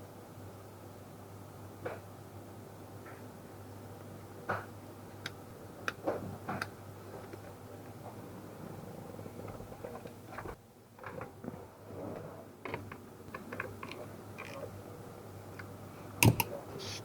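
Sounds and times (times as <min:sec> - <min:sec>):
hand tools clicking and knocking: 0:16.2 - 0:16.6.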